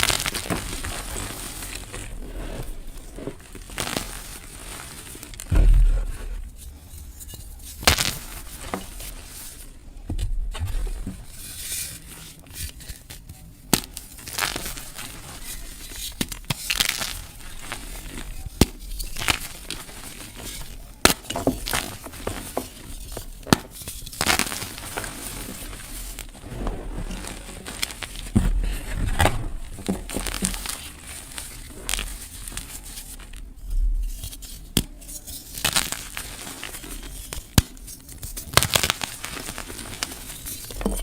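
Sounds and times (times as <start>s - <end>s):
dried petals crackling: 0.0s - 9.8s, 10.5s - 33.7s, 34.7s - 41.0s
chalk block crushing: 10.6s - 33.4s.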